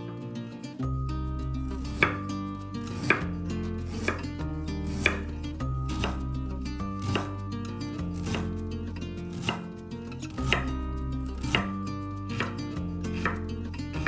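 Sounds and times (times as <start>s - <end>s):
background music: 0.0s - 14.0s
knife chopping on cutting board: 1.9s - 2.2s, 2.9s - 3.3s, 3.9s - 4.2s, 4.9s - 5.3s, 6.0s - 6.2s, 7.0s - 7.4s, 8.2s - 8.5s, 9.3s - 9.7s, 10.4s - 10.7s, 11.4s - 11.8s, 12.4s - 13.4s.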